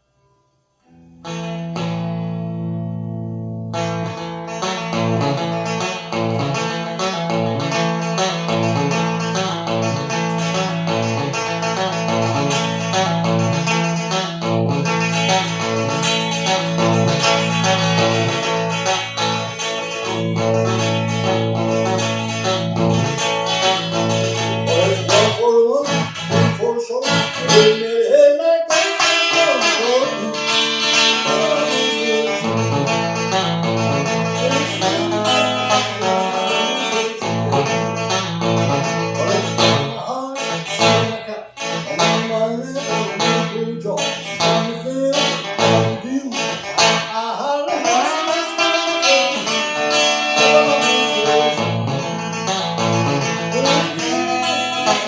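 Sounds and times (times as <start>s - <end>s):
strummed guitar chords: 0.8s - 55.0s.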